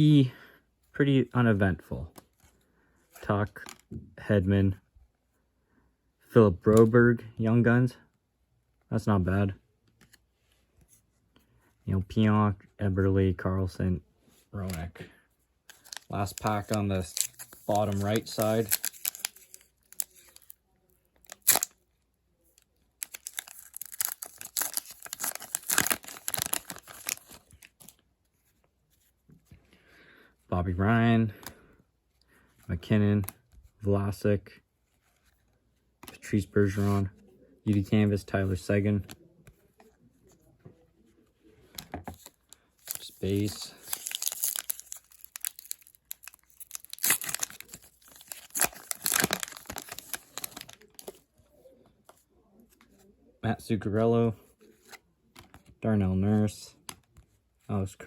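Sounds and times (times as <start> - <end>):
foil wrapper crinkling: 15.7 - 20.6, 21.2 - 21.7, 23.0 - 27.7, 42.2 - 51.2
foil wrapper ripping: 15.8 - 20.5, 21.3 - 21.7, 23.0 - 27.4, 42.9 - 51.0.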